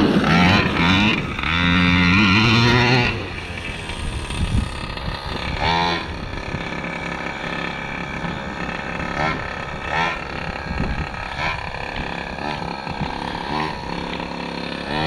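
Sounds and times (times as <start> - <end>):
two-stroke engine revving: 0.0 - 15.0.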